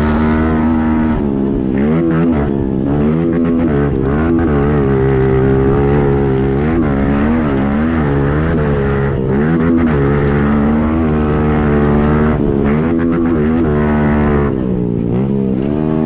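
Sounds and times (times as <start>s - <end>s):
motorbike engine revving: 0.0s - 16.0s.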